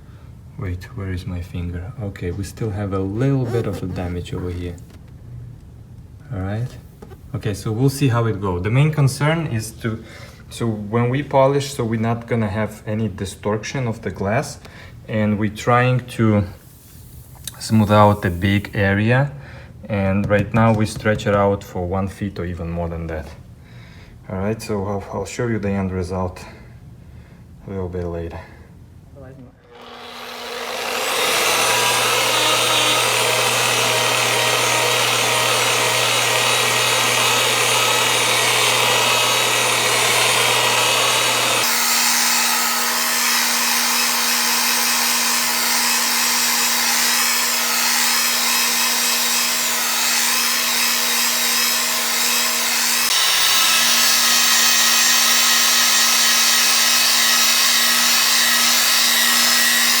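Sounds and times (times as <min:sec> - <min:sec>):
glass polisher motor hum: 0:29.7 - 1:00.0.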